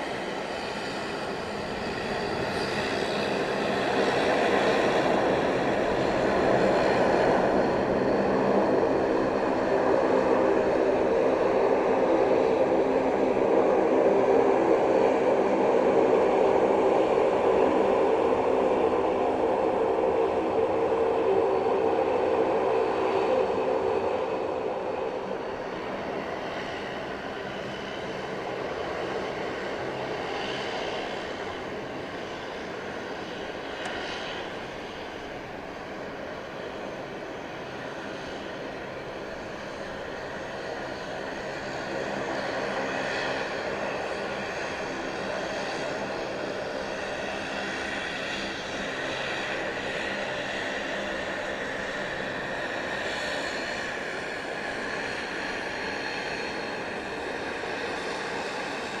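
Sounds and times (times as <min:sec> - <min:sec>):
jet engines at takeoff: 0:00.0 - 0:59.0.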